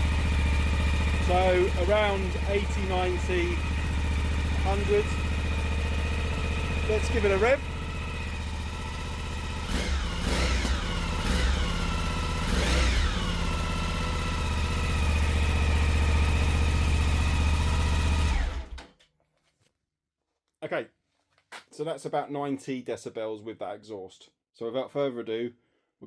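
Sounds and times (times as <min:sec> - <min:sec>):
motorcycle engine idling: 0:00.0 - 0:18.8
motorcycle engine revving: 0:00.0 - 0:18.8.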